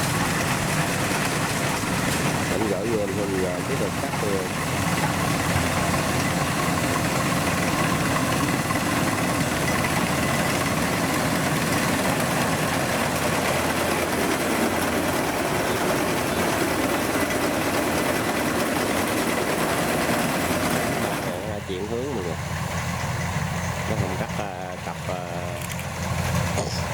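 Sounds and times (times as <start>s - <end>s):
diesel engine running: 0.0s - 26.9s.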